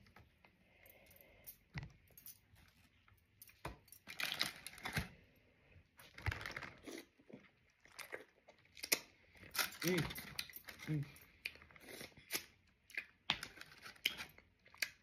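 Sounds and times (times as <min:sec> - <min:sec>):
crinkling: 0:02.2 - 0:05.2, 0:06.0 - 0:12.5.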